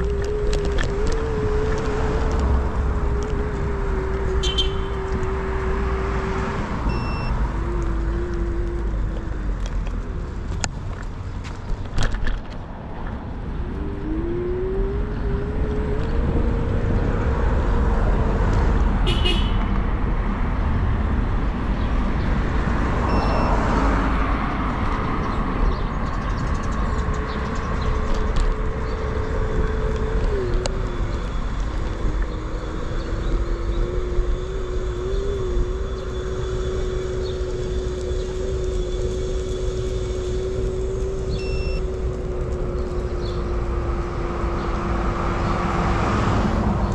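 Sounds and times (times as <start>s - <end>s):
constant engine drone: 0.0s - 46.9s
passing vehicles rumbling: 0.0s - 46.9s.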